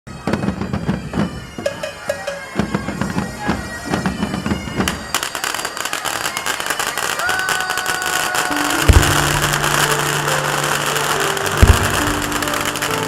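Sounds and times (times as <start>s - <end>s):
bagpipes: 0.1s - 13.0s
drum beat: 0.4s - 5.2s, 8.8s - 10.3s, 11.5s - 13.0s.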